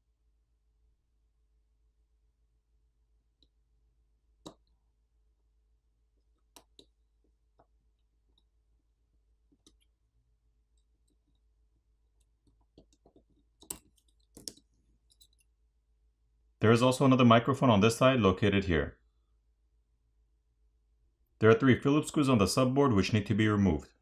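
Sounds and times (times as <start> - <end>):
small tools clicking on phone parts: 12.7 - 15.5.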